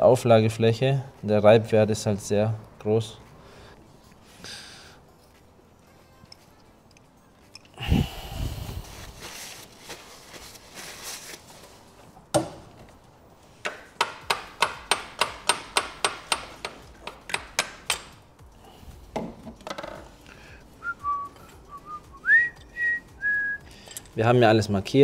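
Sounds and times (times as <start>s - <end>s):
hammer striking metal: 13.7s - 18.2s
person whistling: 20.8s - 23.7s.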